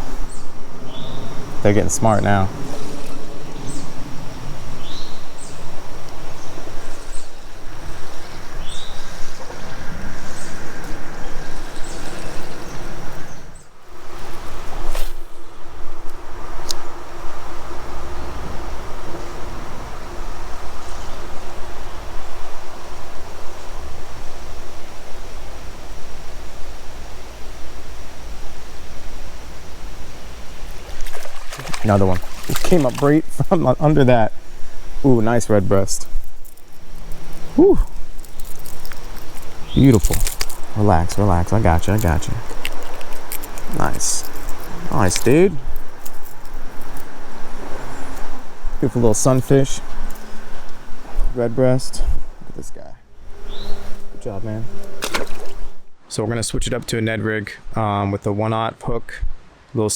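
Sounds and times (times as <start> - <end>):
faint insect drone: 0.0 - 59.8
creek rushing: 16.3 - 52.6.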